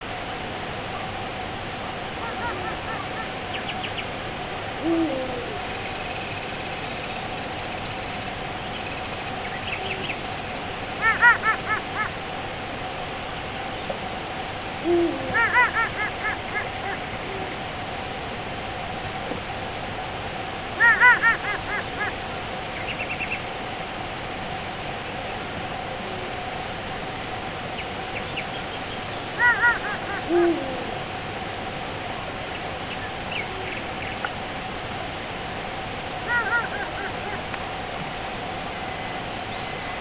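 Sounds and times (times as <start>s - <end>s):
steady hiss: 0.0s - 40.0s
owl hooting: 2.1s - 12.2s, 14.6s - 17.6s, 20.8s - 22.1s, 29.2s - 31.5s, 36.2s - 37.6s.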